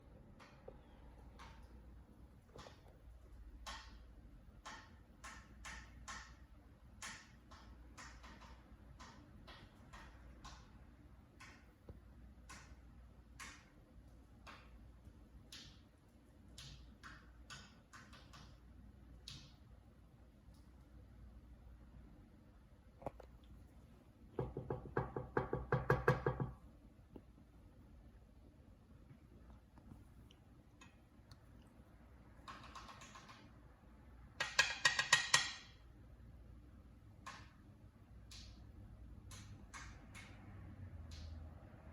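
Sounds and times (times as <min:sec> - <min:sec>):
bird beak tapping on fan: 0:03.6 - 0:06.4, 0:24.4 - 0:26.6, 0:34.4 - 0:35.6
beak knocking against fan: 0:24.4 - 0:26.6.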